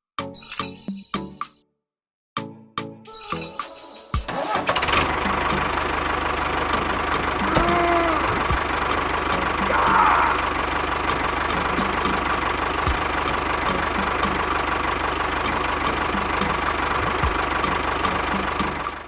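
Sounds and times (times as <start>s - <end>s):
small engine idling: 4.3s - 19.0s.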